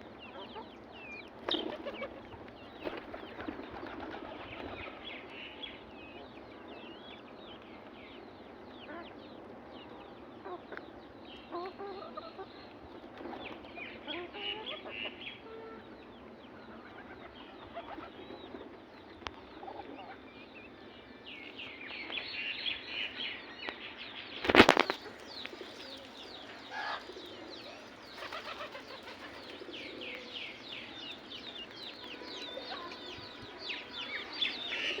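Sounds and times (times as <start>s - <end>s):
high chirping calls: 24.4s - 35.0s
pigeons cooing: 24.5s - 35.0s.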